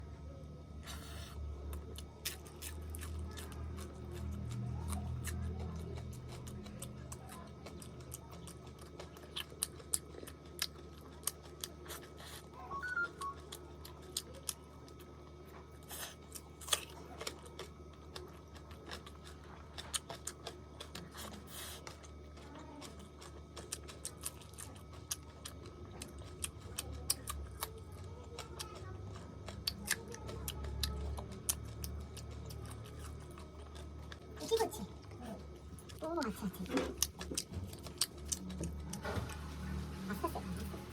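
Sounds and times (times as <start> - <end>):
chewing clicks and smacks: 1.7 - 12.3, 15.9 - 34.5.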